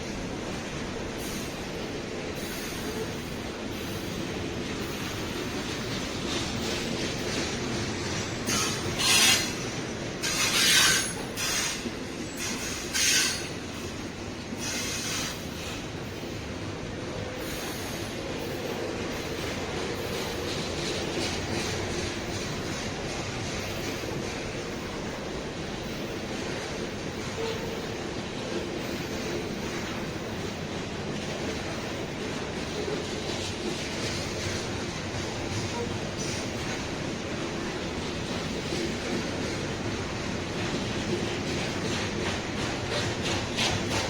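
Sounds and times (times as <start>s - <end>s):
freight train rolling on rails: 0.0s - 44.0s
wheel screech: 8.4s - 9.6s, 10.2s - 13.6s.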